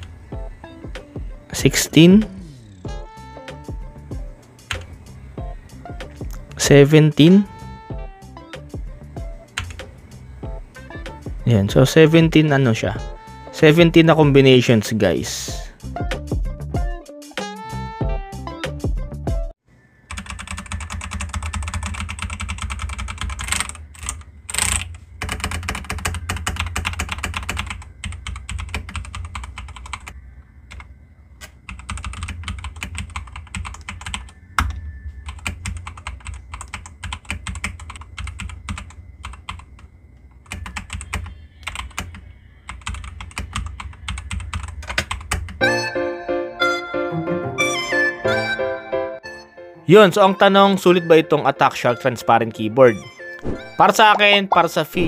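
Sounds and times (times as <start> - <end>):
steady low hum: 0.0 - 13.5, 19.7 - 45.6
mechanical keyboard typing: 20.1 - 30.8, 31.4 - 34.3, 35.3 - 39.8, 40.4 - 45.6.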